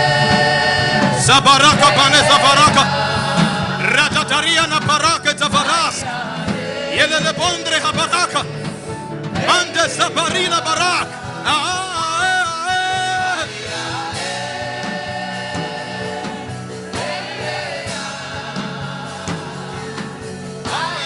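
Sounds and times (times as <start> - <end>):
sustained choir chords: 0.0 - 5.3.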